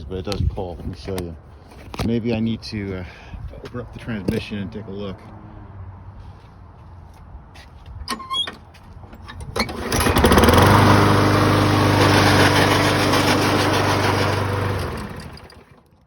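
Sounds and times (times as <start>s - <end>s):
lawn mower engine running: 9.2s - 15.9s.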